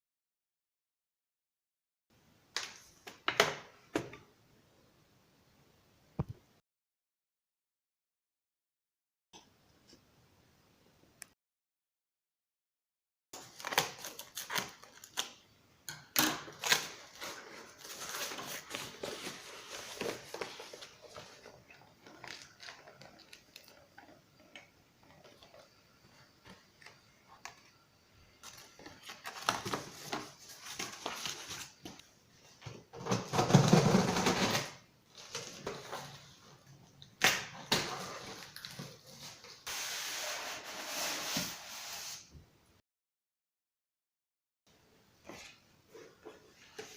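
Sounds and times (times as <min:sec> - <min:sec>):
rustling of objects: 0:16.4 - 0:42.3.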